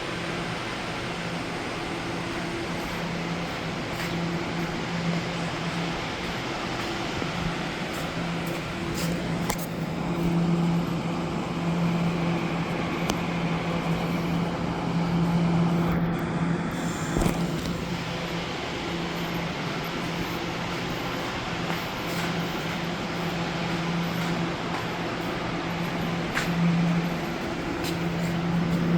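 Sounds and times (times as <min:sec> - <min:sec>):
electric train humming: 0:00.0 - 0:28.9.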